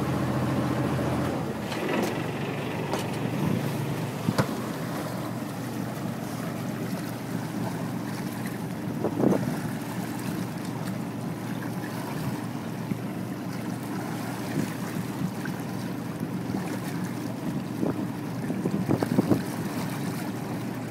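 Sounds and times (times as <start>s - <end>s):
water washing along a boat hull: 0.0s - 20.9s
wind buffeting microphone: 8.9s - 9.9s, 17.5s - 20.0s.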